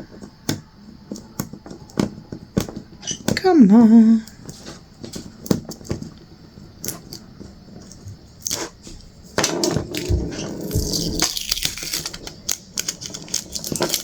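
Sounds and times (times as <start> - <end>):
plastic film crinkling: 9.8 - 14.0
low handling thumps: 9.9 - 11.2.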